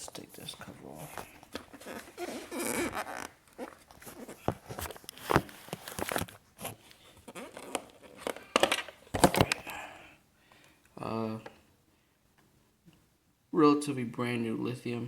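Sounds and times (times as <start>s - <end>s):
plastic cover handling noise: 0.0s - 9.7s.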